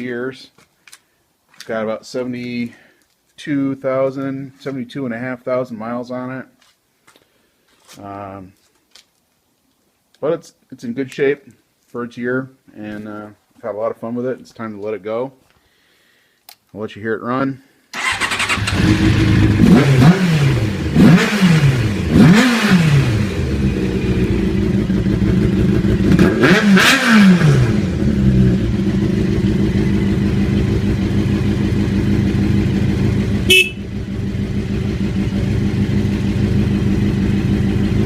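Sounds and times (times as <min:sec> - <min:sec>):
motorcycle engine revving and idling: 0:18.0 - 0:38.0.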